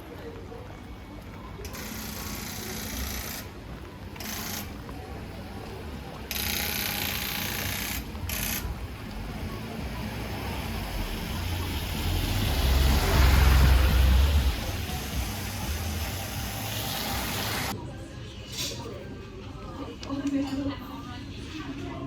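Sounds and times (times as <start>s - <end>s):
low vehicle rumble: 8.1s - 17.7s
hiss: 12.1s - 17.7s.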